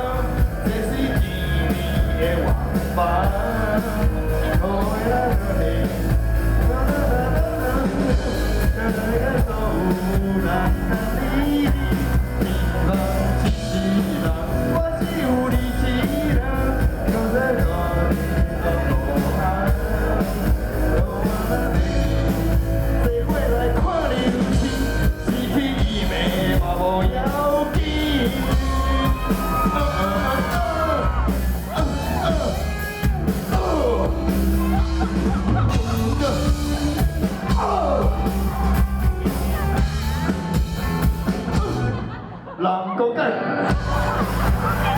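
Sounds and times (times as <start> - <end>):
rock band playing: 0.0 - 42.4, 43.6 - 44.9
voices yelling: 28.0 - 44.9.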